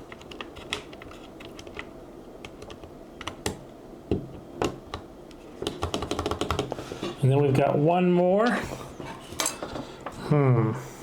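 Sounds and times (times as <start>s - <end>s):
keyboard plastic clicks and taps: 4.6s - 6.7s.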